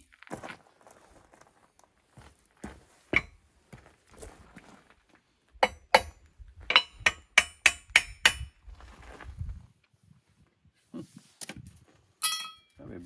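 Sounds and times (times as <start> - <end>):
hammer striking steel: 5.6 - 8.5, 12.2 - 12.8.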